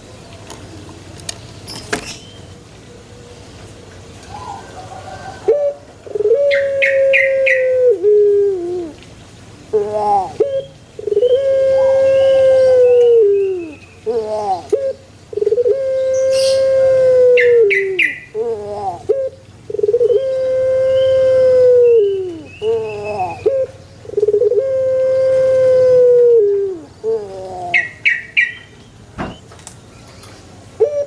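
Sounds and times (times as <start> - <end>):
dove cooing: 4.3 - 9.0, 9.7 - 28.6, 30.8 - 31.0.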